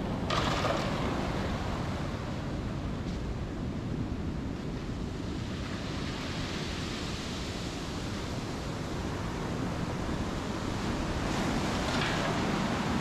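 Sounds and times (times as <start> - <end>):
sea surf washing onto beach: 0.0 - 3.9, 4.7 - 13.0.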